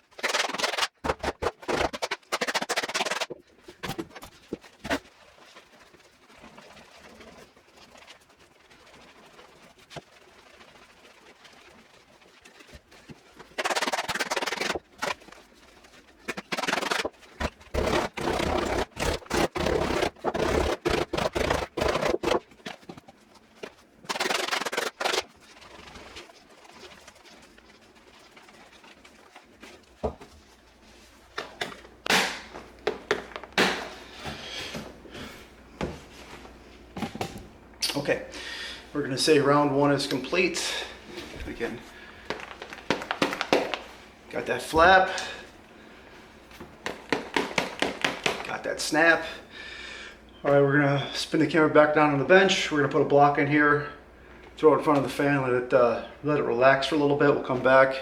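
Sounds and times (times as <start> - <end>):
mallet beating leather glove: 16.3 - 22.5, 46.8 - 48.5.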